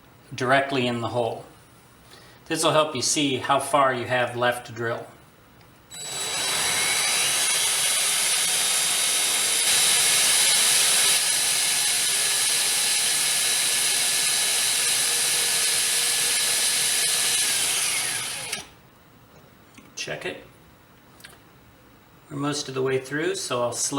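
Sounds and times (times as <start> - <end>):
drill grinding through glass: 5.9 - 18.7.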